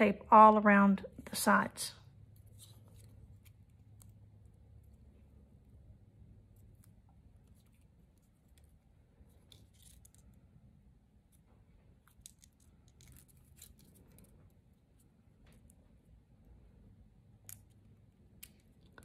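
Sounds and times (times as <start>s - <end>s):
foil tape and card crinkling: 6.5s - 10.4s, 12.1s - 14.5s.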